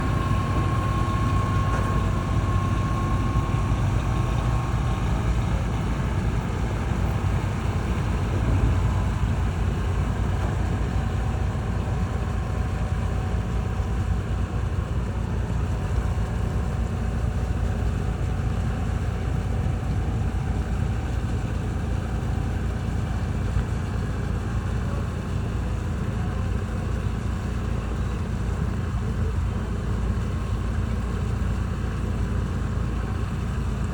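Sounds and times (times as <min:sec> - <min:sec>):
faint high whine: 0:00.0 - 0:12.9
boat engines rumbling: 0:00.0 - 0:33.9.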